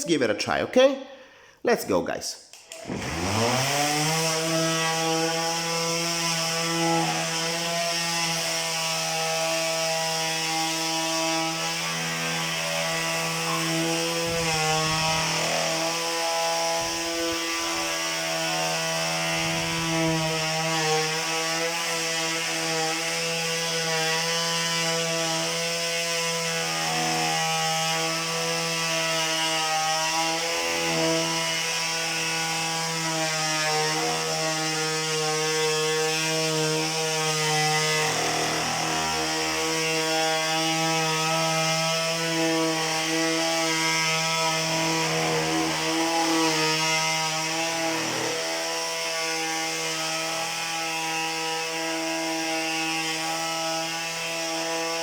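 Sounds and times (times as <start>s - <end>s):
palm sander buzzing on wood: 2.6s - 55.0s.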